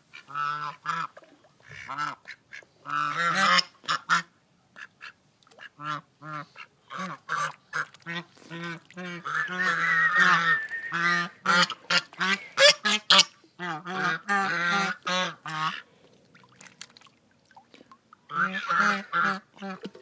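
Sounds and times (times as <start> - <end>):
ducks quacking: 0.1 - 15.9, 18.3 - 19.9
goose honking: 5.8 - 15.8, 18.3 - 19.8.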